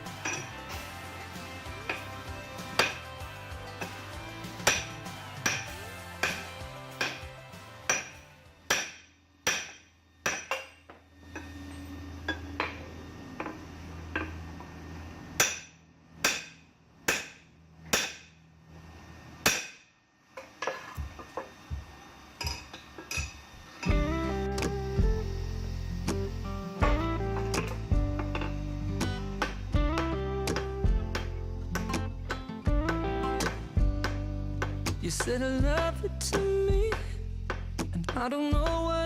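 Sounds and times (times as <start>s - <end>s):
background music: 0.0s - 9.7s, 23.9s - 39.0s
hammer ringing on anvil: 4.6s - 7.3s, 7.9s - 13.6s.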